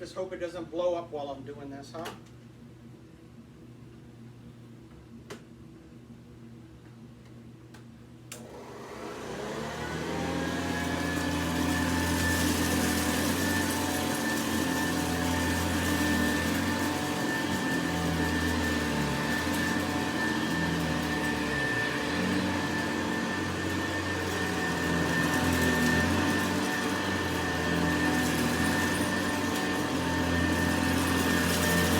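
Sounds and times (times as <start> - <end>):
vacuum cleaner switch click: 8.3 - 8.5
vacuum cleaner motor whining: 8.4 - 31.9.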